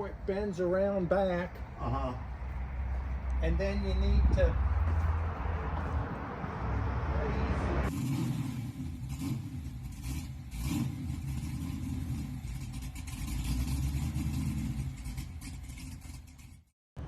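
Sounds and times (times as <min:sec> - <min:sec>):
car engine revving: 0:04.2 - 0:16.7.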